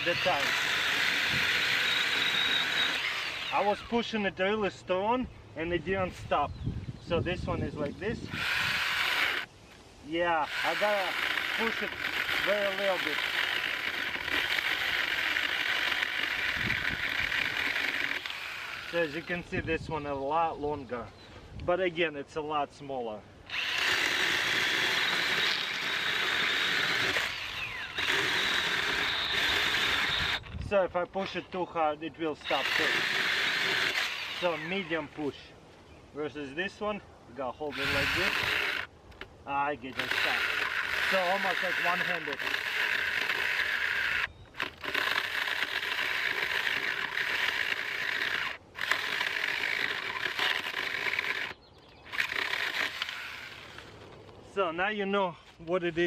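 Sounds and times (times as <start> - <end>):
mini chainsaw cutting wood: 0.0 - 4.2, 8.1 - 9.5, 10.4 - 19.6, 23.5 - 35.4, 37.6 - 54.1.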